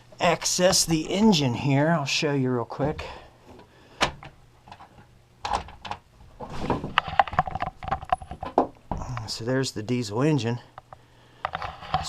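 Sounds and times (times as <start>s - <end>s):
wooden knocks and rattles: 4.1s - 9.2s.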